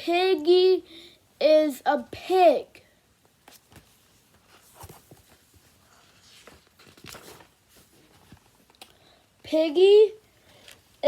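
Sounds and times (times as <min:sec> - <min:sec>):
soft taps and rustles: 0:03.2 - 0:08.9.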